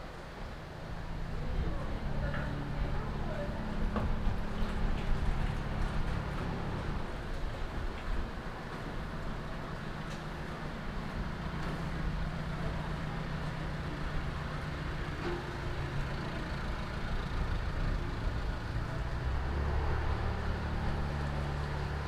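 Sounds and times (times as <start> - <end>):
low engine rumble: 0.9 - 22.0.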